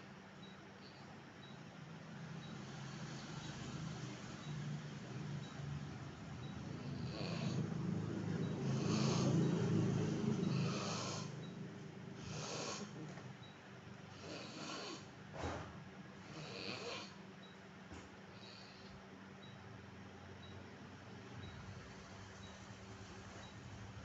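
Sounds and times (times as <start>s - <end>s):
man snoring: 6.7s - 11.5s, 12.2s - 13.1s, 14.1s - 15.1s, 16.2s - 17.2s, 18.4s - 18.9s
hissing breaths: 8.6s - 9.5s, 10.4s - 11.5s.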